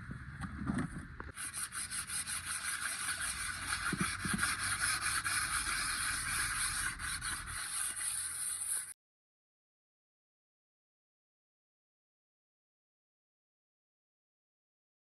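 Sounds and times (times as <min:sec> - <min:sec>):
scraping on engine block: 0:00.4 - 0:08.9.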